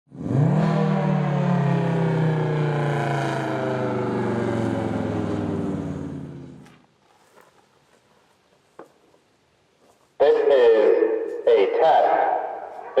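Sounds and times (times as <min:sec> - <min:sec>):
electronic warning siren: 0:00.5 - 0:06.6.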